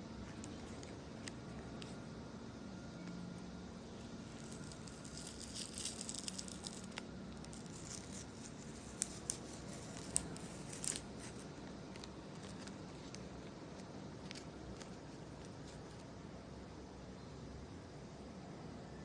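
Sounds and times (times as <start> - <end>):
faint low hum: 0.0 - 19.0
small crinkly ticks: 4.4 - 16.1.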